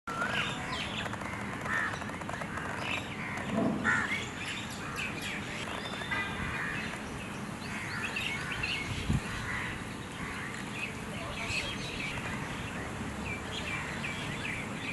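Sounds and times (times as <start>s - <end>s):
steady background noise: 0.1s - 14.9s
wild birds chirping: 0.1s - 14.9s
low loud bird call: 1.6s - 7.0s.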